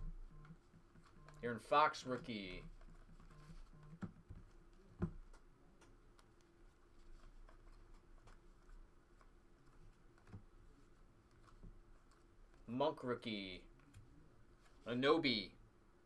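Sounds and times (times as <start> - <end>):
faint sharp clicks and taps: 2.7 - 10.6.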